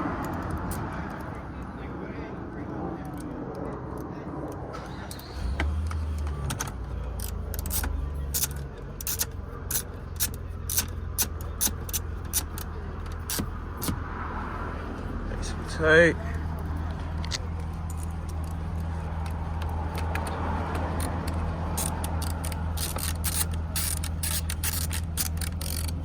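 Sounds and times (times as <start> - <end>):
low rumble: 0.0 - 26.0
ratchet clicking: 0.1 - 1.3, 5.0 - 14.1, 16.6 - 26.0.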